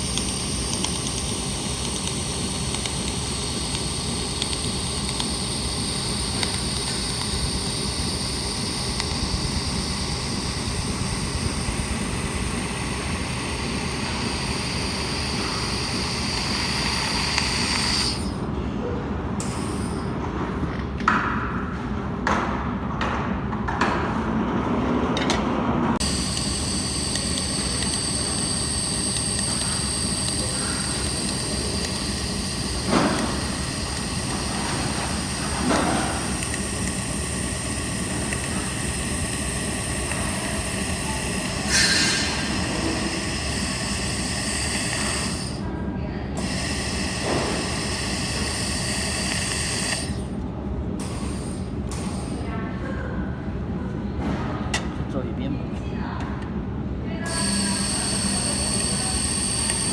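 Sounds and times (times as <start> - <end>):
laser welder hissing and whining: 0.0 - 18.4, 19.4 - 20.1, 26.0 - 45.7, 46.3 - 50.4, 51.0 - 52.5, 57.2 - 59.9
sharp clicks: 0.0 - 18.4, 26.0 - 45.6, 46.4 - 50.3, 57.3 - 59.9.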